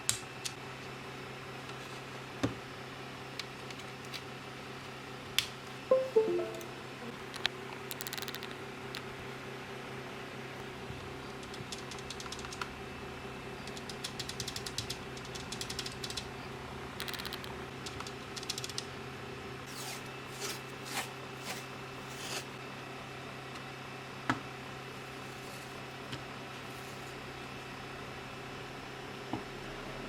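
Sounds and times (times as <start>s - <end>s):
mechanical keyboard typing: 17.0s - 18.8s.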